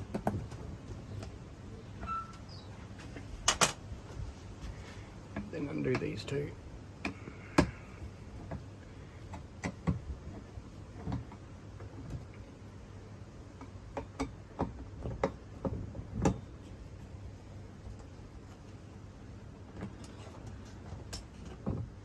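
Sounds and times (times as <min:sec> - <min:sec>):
light clicks and knocks: 0:00.0 - 0:03.8, 0:04.7 - 0:06.4, 0:07.0 - 0:12.6, 0:13.4 - 0:16.8, 0:19.6 - 0:22.0.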